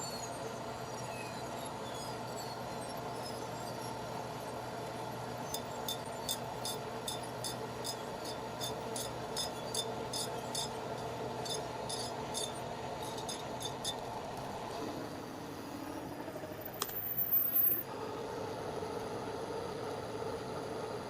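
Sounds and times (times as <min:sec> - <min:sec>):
metal lathe humming: 0:00.4 - 0:15.8.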